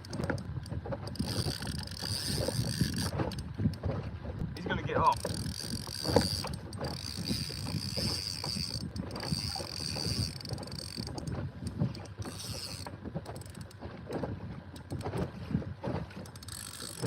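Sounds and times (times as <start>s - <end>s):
fishing reel clicking: 0.0s - 3.4s, 5.1s - 13.8s, 16.2s - 17.0s.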